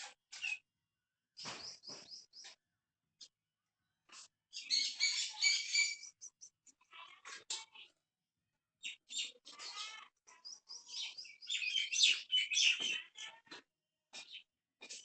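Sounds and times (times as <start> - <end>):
high-pitched animal chirps and squeaks: 4.5 - 7.9, 9.0 - 13.5.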